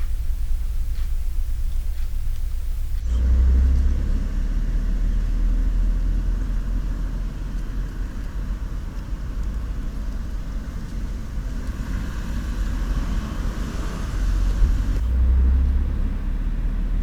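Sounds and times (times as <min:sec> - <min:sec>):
microphone hiss: 0:00.0 - 0:03.1.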